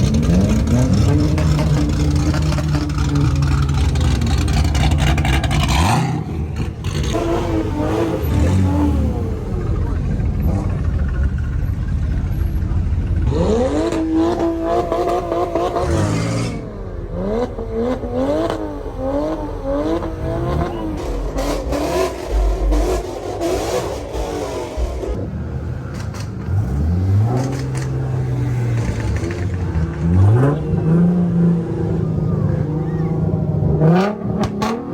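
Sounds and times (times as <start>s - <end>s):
car engine revving: 0.0s - 34.9s.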